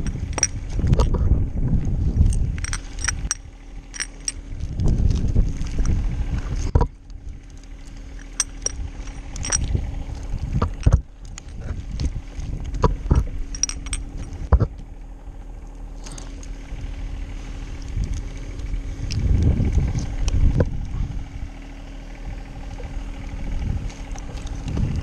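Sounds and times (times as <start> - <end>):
metal hardware clinking: 0.0 - 1.1, 2.2 - 4.6, 7.4 - 9.8, 12.8 - 14.8
low uneven rumble: 0.0 - 25.0.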